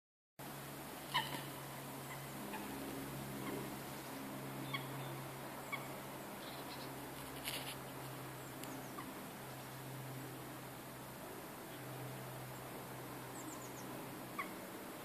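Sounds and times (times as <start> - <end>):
short bird calls: 1.1 - 1.5.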